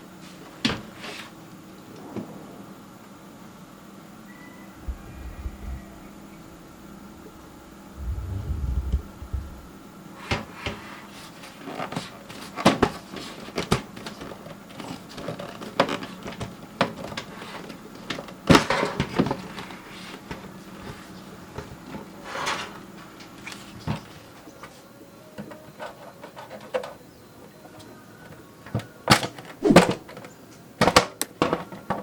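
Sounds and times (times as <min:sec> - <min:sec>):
short scrape: 0:29.6 - 0:30.0.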